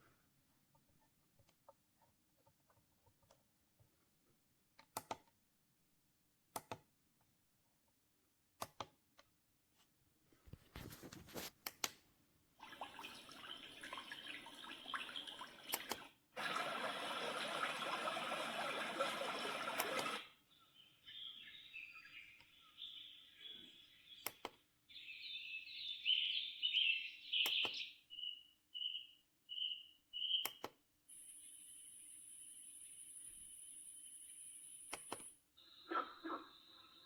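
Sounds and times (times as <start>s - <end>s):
water-like rushing from speaker: 12.6s - 20.2s
sharp clicks: 24.2s - 24.6s, 27.4s - 27.8s, 30.4s - 30.8s, 34.9s - 35.4s.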